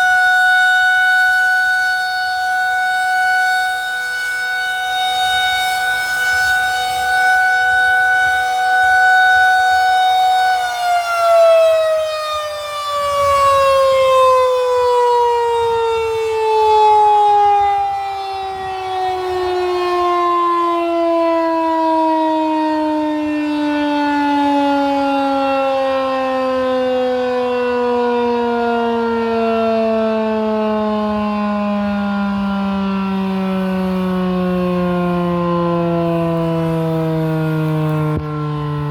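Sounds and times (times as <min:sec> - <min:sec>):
rotating tornado siren winding down: 0:00.0 - 0:38.9.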